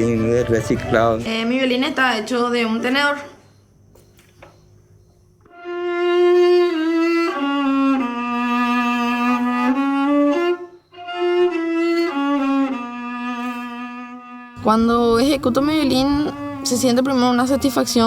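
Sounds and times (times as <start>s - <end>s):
bowed violin long notes: 5.5s - 18.0s.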